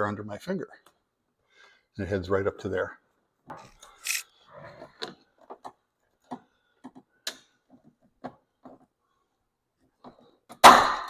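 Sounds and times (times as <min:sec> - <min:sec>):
plastic trim parts clicking: 0:04.0 - 0:04.2.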